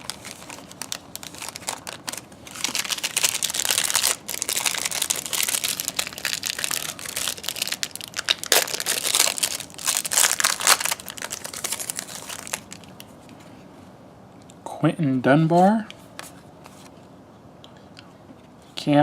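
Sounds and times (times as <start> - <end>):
plastic wrapper crinkling: 0.0 - 13.1.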